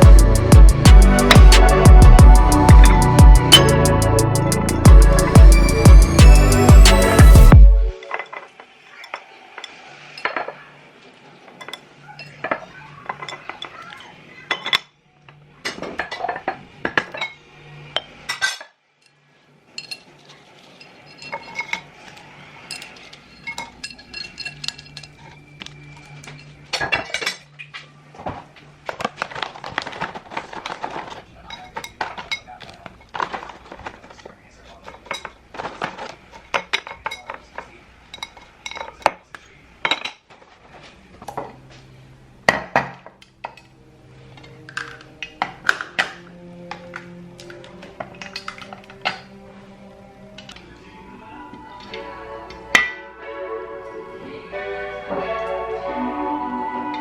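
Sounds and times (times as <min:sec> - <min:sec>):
dishes and cutlery clinking: 0:08.1 - 0:10.6, 0:11.5 - 0:15.0, 0:15.6 - 0:40.3, 0:42.5 - 0:43.7, 0:44.3 - 0:49.4, 0:52.7 - 0:53.0.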